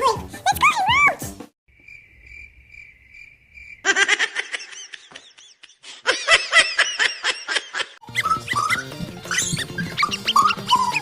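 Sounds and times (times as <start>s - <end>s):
high-pitched giggling laughter: 3.8s - 11.0s.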